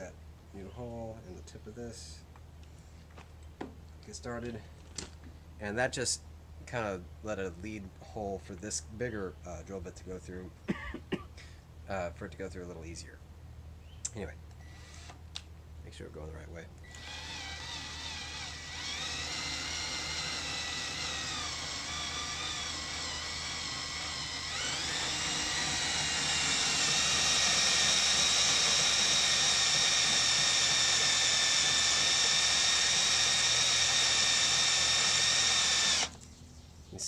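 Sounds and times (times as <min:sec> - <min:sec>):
cordless drill boring through steel: 0:14.6 - 0:15.2, 0:16.9 - 0:36.2.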